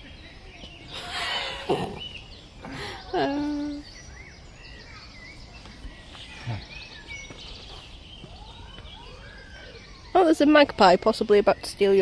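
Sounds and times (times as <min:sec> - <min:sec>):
outdoor background noise: 0:00.0 - 0:12.0
small birds chirping: 0:00.0 - 0:12.0.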